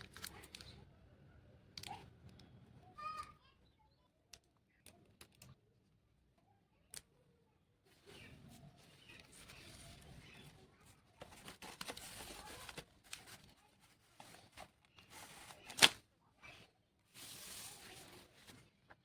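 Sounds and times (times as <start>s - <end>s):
paper rustling and tearing: 11.1s - 18.8s.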